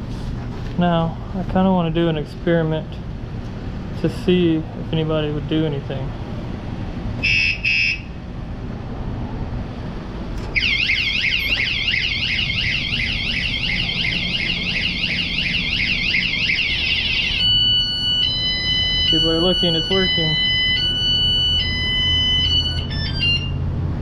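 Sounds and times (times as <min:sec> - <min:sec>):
warbling alarm siren: 0:07.2 - 0:08.2, 0:10.5 - 0:23.8
alternating alarm tones: 0:07.2 - 0:08.3, 0:10.5 - 0:23.8.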